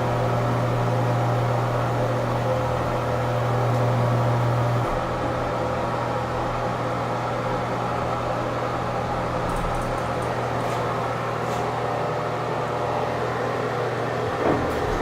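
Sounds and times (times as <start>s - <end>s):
elevator pump motor hum: 0.0s - 15.0s.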